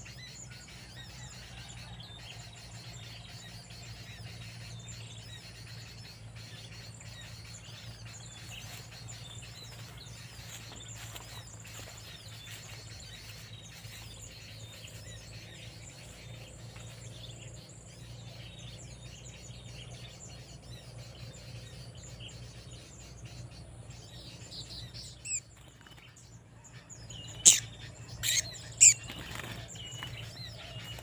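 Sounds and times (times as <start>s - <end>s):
small birds chirping: 0.0s - 31.0s.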